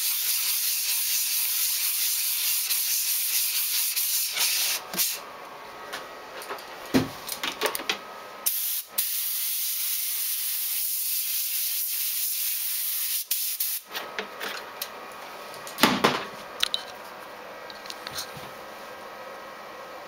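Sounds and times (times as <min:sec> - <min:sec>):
loud steady hiss: 0:08.4 - 0:13.9.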